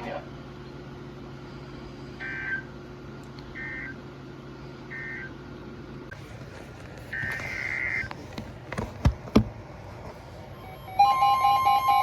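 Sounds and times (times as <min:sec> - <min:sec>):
steady low hum: 0:00.0 - 0:11.6.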